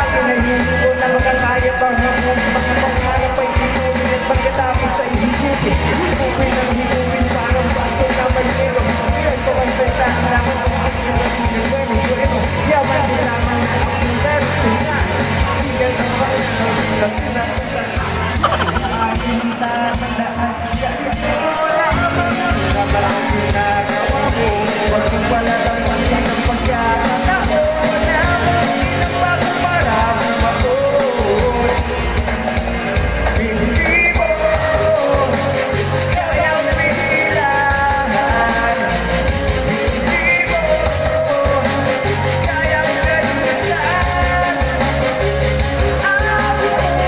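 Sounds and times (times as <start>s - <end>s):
rock backing track: 0.0s - 47.0s
steady drum beat: 17.9s - 21.0s
wavering melody line: 18.4s - 20.6s.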